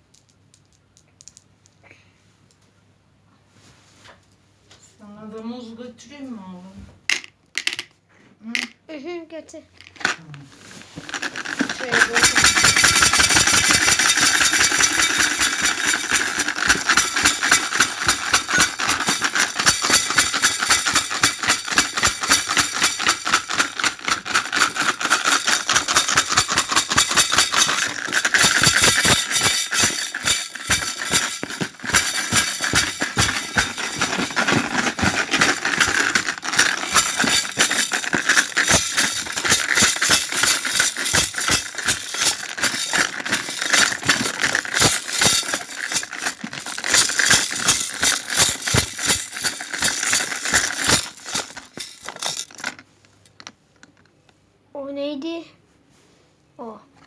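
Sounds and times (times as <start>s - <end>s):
washing machine spinning and rattling: 11.1s - 52.7s.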